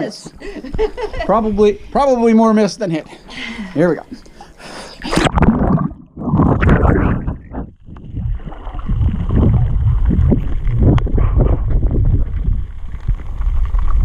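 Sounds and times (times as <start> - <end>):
muffled rush of water underwater: 5.1 - 14.0.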